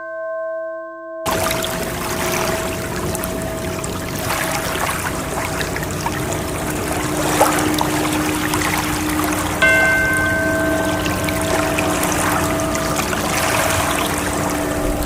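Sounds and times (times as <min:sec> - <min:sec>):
faint sustained tones: 0:01.3 - 0:15.0
water rushing and splashing: 0:01.3 - 0:15.0
bell-like chime: 0:09.6 - 0:15.0.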